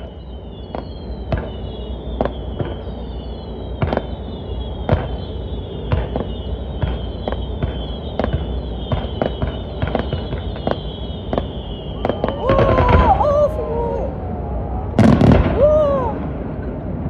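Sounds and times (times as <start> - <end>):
fireworks whistling: 0.0 - 16.5
fireworks bangs: 4.8 - 14.1, 14.8 - 17.0
low rumble: 11.9 - 17.0.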